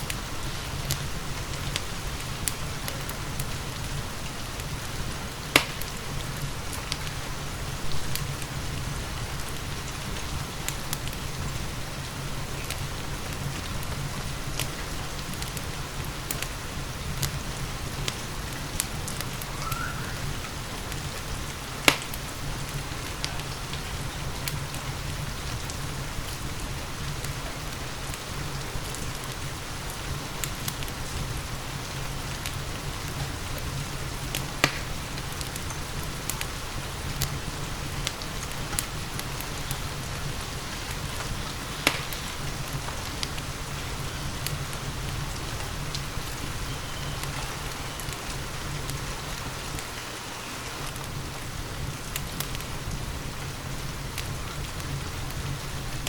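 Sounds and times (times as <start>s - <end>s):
steady rain falling: 0.0s - 56.0s
wood fire crackling: 0.0s - 56.0s
loud sharp pops: 5.5s - 6.0s, 21.8s - 22.2s, 34.6s - 34.9s, 41.2s - 42.4s.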